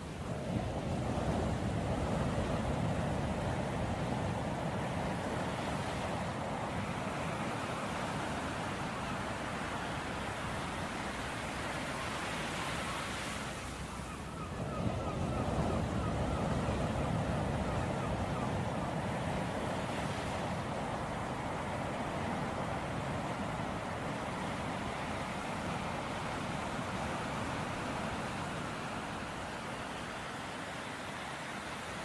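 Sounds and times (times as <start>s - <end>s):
ocean surf washing: 0.0s - 32.0s.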